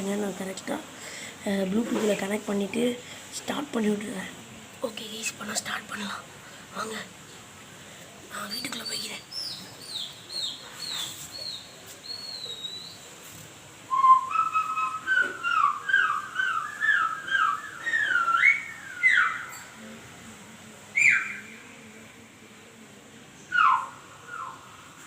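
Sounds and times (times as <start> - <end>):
sliding whistle-like calls: 13.9 - 19.8, 21.0 - 21.5, 23.5 - 25.0.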